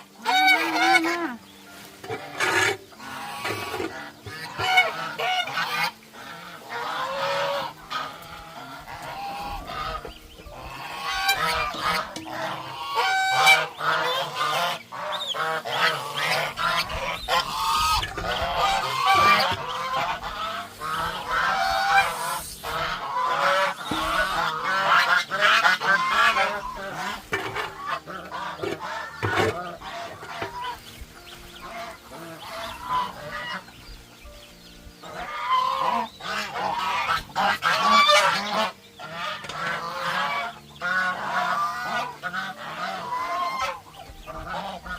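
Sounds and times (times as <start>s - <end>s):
farm poultry calling: 0.0s - 44.9s.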